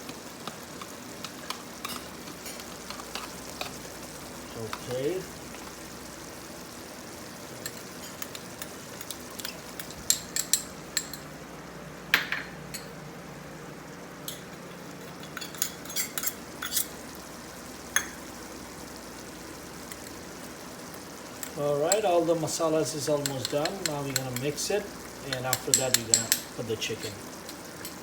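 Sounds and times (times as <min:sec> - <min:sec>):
food sizzling in oil: 0:00.0 - 0:28.0
spoon scraping a pan: 0:00.4 - 0:03.9, 0:14.3 - 0:17.0.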